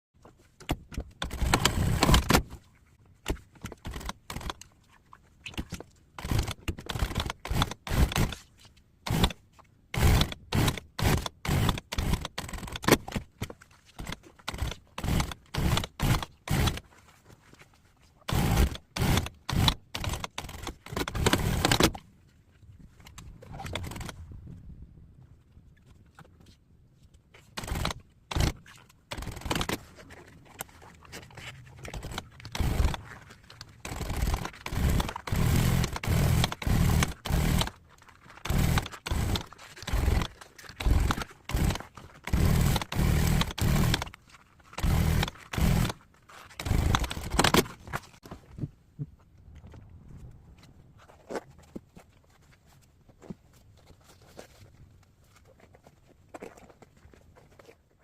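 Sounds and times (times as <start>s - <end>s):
sharp mechanical tool bursts: 6.2s - 8.4s, 9.1s - 9.4s, 10.0s - 13.2s, 14.0s - 16.8s, 18.3s - 22.0s, 27.6s - 29.8s, 31.9s - 33.0s, 33.8s - 37.8s, 38.4s - 44.2s, 44.8s - 46.0s, 46.6s - 47.8s.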